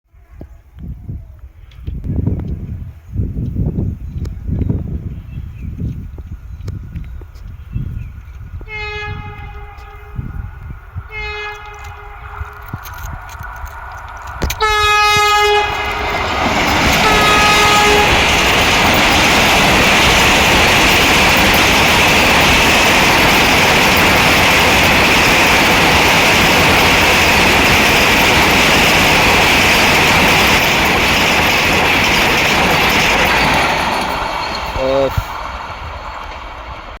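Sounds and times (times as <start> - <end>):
train wheels rushing on rail: 0.8 - 37.0
train horn blasts: 8.6 - 12.8, 14.6 - 16.3, 17.0 - 18.4.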